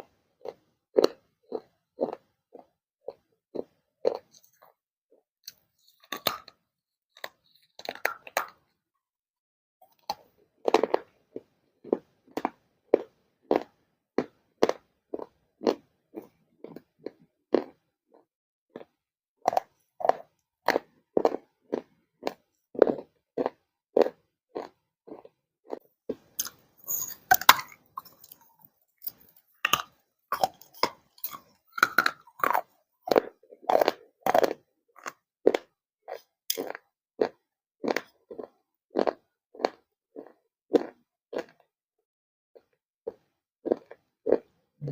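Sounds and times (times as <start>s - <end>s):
crunching and chewing clay: 0.0s - 8.7s, 9.8s - 41.7s, 42.5s - 44.9s.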